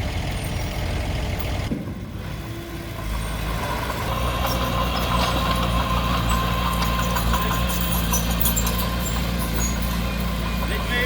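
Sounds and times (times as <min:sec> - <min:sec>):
heavy diesel engine running: 0:00.0 - 0:11.0
light metallic clinks: 0:04.4 - 0:10.8.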